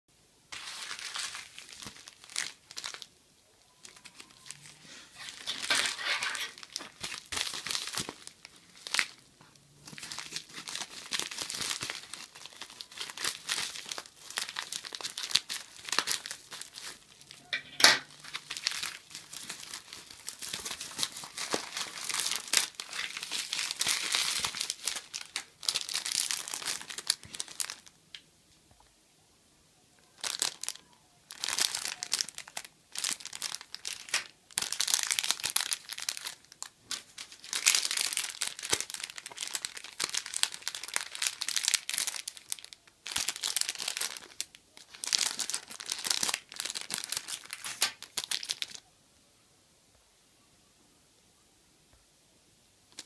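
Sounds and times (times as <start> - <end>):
packaging crinkling and tearing: 0.5 - 28.2, 30.1 - 48.8.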